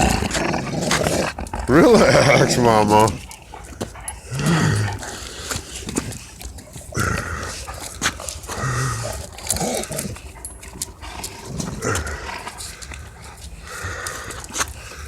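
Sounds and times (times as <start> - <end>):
dogs growling: 0.0 - 15.0
scuffling clicks: 4.9 - 14.9.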